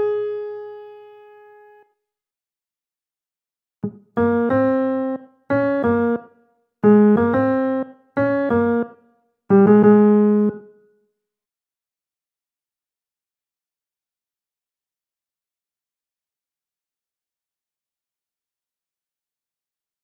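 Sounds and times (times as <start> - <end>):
piano melody playback: 4.1 - 10.8.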